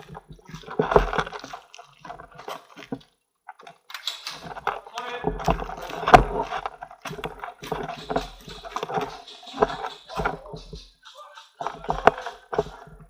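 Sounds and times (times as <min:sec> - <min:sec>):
footsteps walking: 0:00.0 - 0:13.0.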